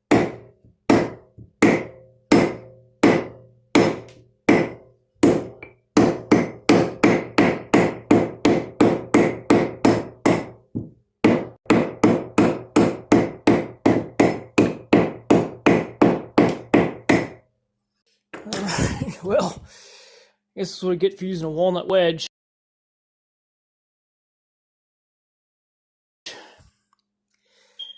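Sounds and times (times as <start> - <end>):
hammer striking wooden wedge: 0.1 - 17.4.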